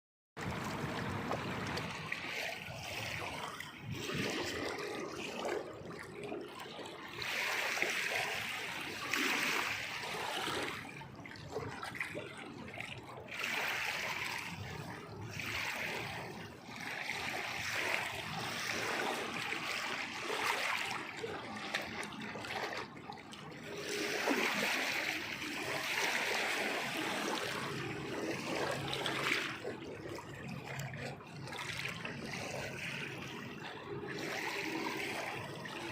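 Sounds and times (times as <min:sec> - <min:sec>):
water splashing and sloshing: 0:00.4 - 0:35.9.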